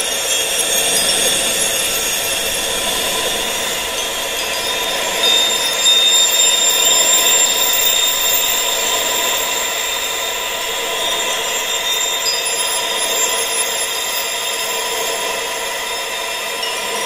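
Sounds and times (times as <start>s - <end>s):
wind-like rushing noise: 0.0s - 13.0s
high-pitched steady tones: 0.0s - 17.0s.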